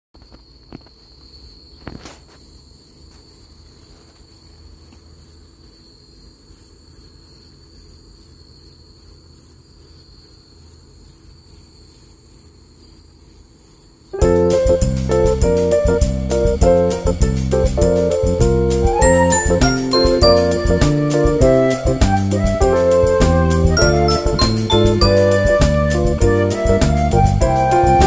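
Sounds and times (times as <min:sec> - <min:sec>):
crickets chirping: 0:00.2 - 0:26.6
high insect hum: 0:00.2 - 0:26.6
loud keyboard music: 0:14.2 - 0:28.0.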